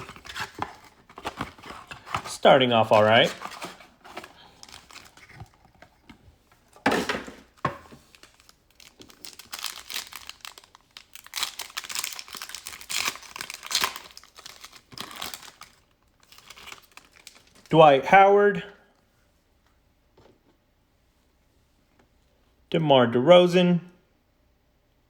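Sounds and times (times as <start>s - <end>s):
plastic wrapper crinkling and tearing: 0.0s - 6.0s, 7.3s - 17.7s.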